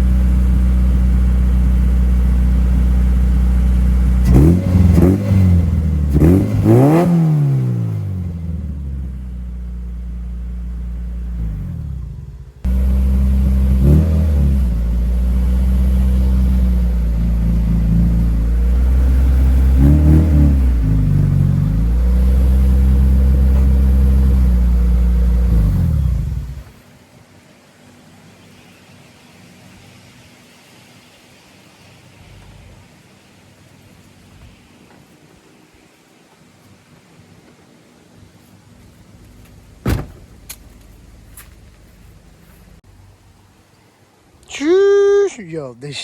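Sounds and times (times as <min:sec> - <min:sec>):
car engine revving and idling: 0:00.0 - 0:26.8.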